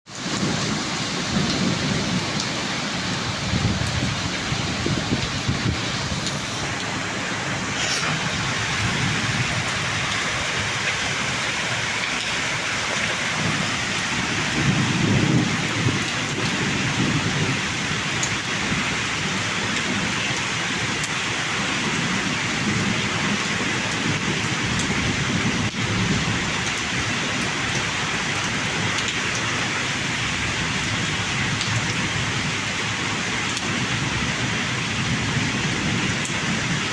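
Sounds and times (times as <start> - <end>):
rolling thunder rumbles: 0.1 - 20.9
heavy rain falling: 0.1 - 36.9.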